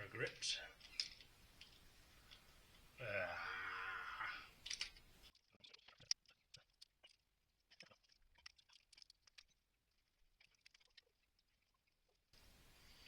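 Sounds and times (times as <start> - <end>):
faint metallic clicks and scrapes: 0.2 - 2.9, 4.6 - 12.2.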